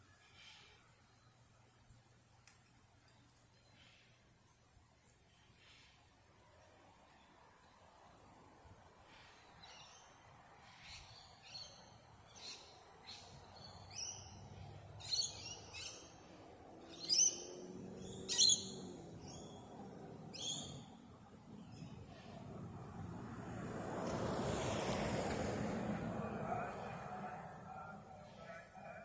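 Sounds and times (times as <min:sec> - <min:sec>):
bird chirping: 0:09.6 - 0:21.0.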